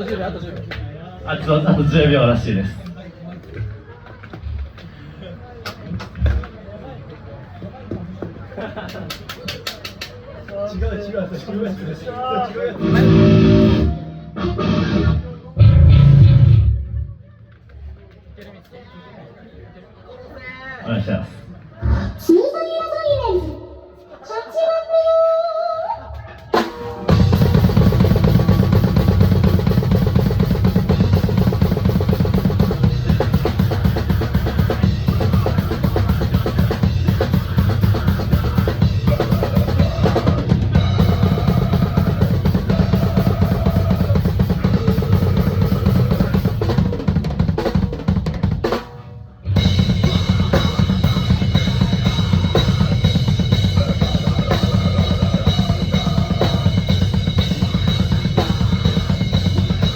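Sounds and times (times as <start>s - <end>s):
drum kit played fast: 12.8s - 16.8s, 26.6s - 59.9s
band instruments playing: 12.8s - 17.0s, 26.5s - 59.9s.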